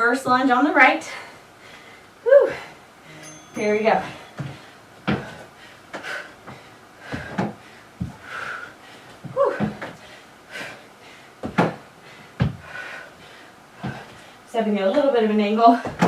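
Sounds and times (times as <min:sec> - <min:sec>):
hard breathing: 0:01.1 - 0:03.2, 0:04.0 - 0:14.5
feet thudding on box and floor: 0:06.5 - 0:08.2, 0:11.4 - 0:11.8, 0:12.4 - 0:12.7.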